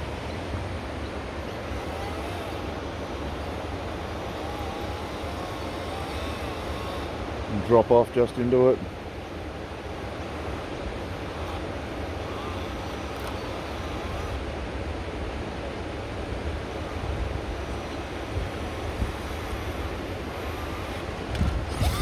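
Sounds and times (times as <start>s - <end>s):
wind buffeting microphone: 16.4s - 22.0s.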